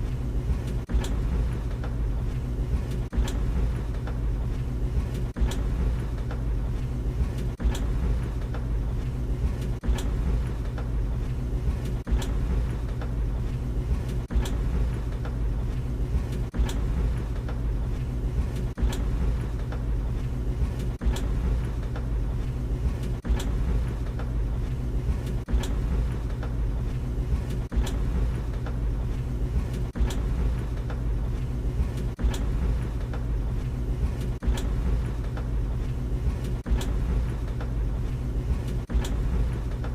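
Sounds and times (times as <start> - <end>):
tumble dryer rumble and hum: 0.0 - 39.9
sharp click in dryer: 7.4 - 8.7, 25.2 - 26.6, 31.9 - 33.3, 34.2 - 35.5, 36.4 - 37.8.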